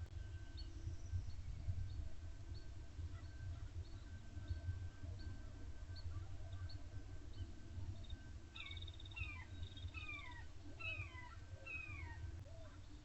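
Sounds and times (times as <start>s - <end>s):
bird calling: 8.0s - 13.0s.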